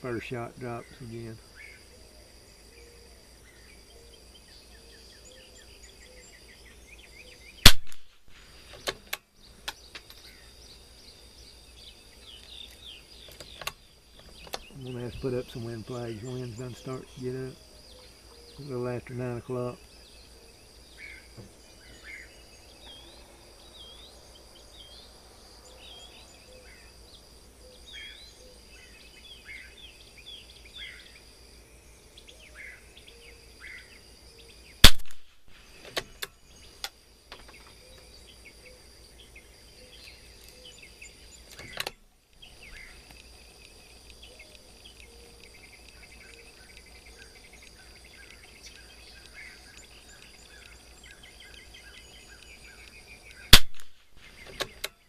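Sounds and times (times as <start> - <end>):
birds chirping: 0.0 - 55.0
high insect drone: 0.0 - 55.0
rifle shot: 7.6 - 8.2, 34.8 - 35.4, 53.5 - 54.1.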